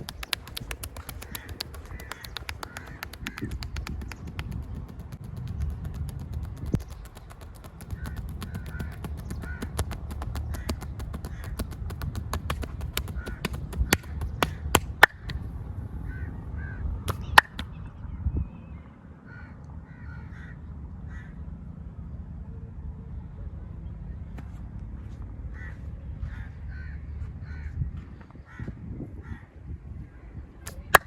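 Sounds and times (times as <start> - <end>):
hands slapping skin: 0.0 - 15.4, 17.1 - 17.7, 30.7 - 31.0
caw-like bird calls: 1.0 - 4.2, 7.9 - 9.8, 10.4 - 11.8, 19.3 - 21.3, 25.5 - 27.8, 28.4 - 29.5.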